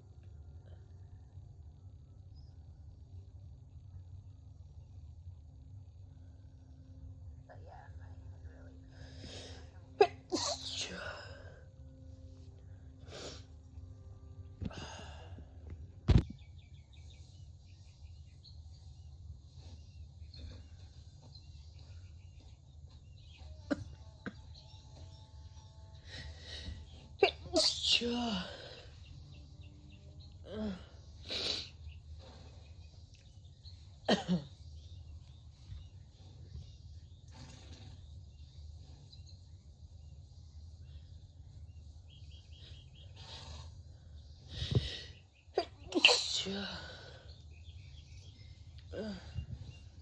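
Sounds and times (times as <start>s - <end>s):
steady low hum: 0.0s - 50.0s
person sneezing: 10.0s - 11.2s, 27.2s - 28.5s, 45.6s - 46.9s.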